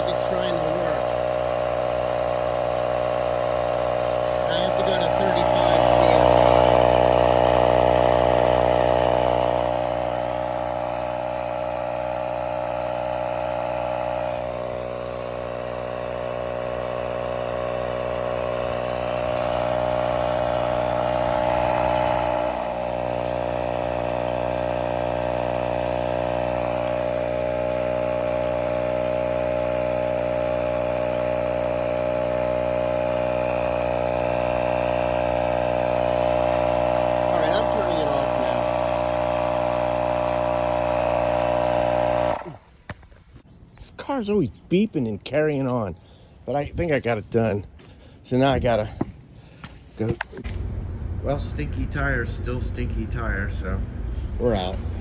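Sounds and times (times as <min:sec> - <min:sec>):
electric compressor buzzing hum: 0:00.0 - 0:43.5.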